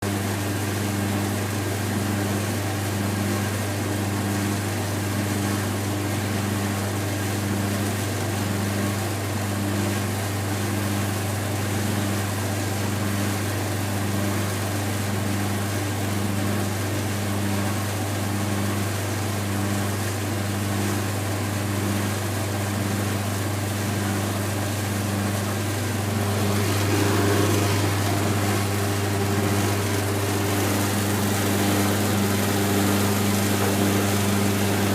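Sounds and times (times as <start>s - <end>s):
laundry machine motor humming: 0.0s - 34.9s
higher machine tone: 25.8s - 34.9s.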